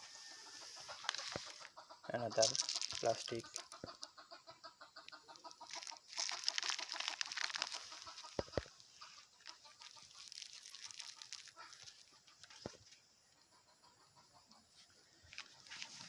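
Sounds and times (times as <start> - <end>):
chickens clucking: 0.0 - 16.0
plastic crinkling: 0.9 - 1.7, 2.4 - 4.0, 5.4 - 12.8.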